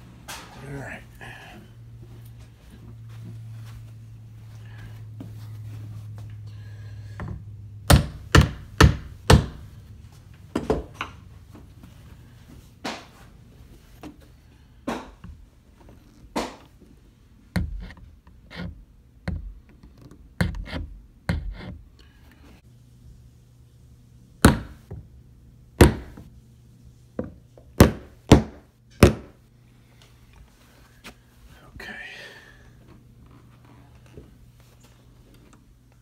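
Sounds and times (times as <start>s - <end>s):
knocks on door handle hardware: 7.9s - 9.6s.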